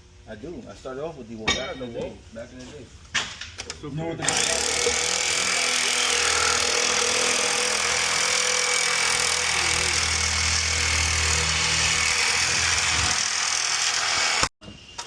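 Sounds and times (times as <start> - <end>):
loud machine humming: 4.2 - 14.5.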